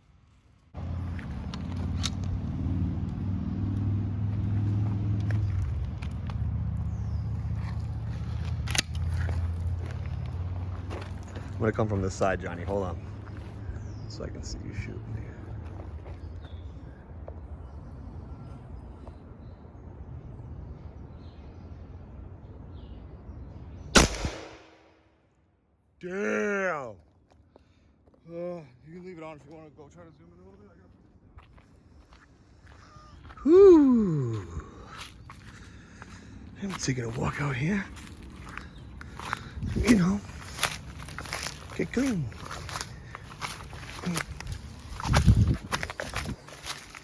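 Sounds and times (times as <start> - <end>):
low outdoor rumble: 0.0 - 24.9, 28.6 - 47.0
engine running: 0.8 - 16.1
air rifle shot: 23.9 - 24.9.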